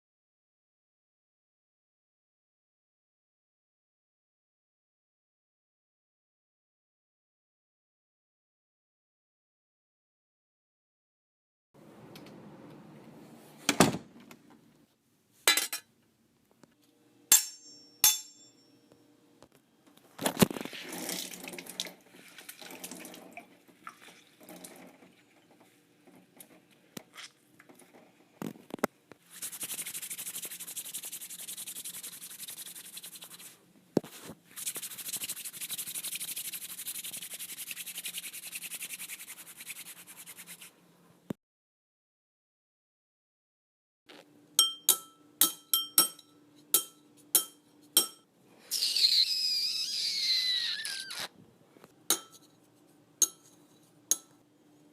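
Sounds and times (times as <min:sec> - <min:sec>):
water running from tap: 0:20.8 - 0:25.4
knocks and clinks: 0:52.1 - 0:52.5.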